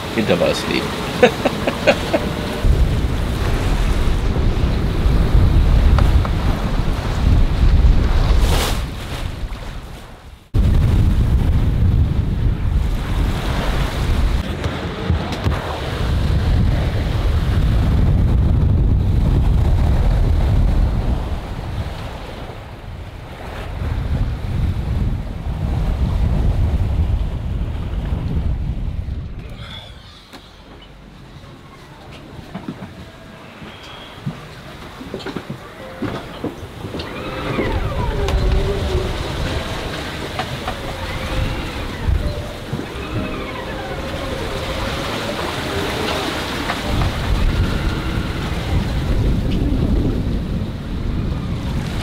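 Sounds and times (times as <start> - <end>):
sea water rushing along hull: 0.0 - 52.0
wind buffeting microphone: 1.0 - 29.8, 34.2 - 52.0
deep rumble: 1.7 - 9.4, 37.0 - 52.0
faint gliding whistling tones: 33.4 - 34.2.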